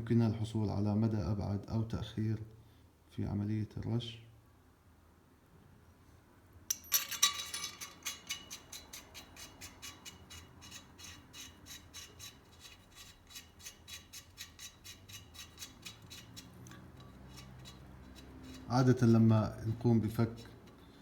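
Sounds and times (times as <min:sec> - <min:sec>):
metal clatter: 0:06.7 - 0:19.0.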